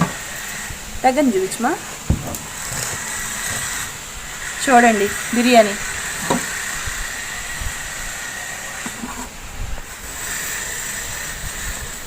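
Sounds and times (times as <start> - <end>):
steady hiss: 0.0 - 12.0
low bumps: 1.9 - 4.0.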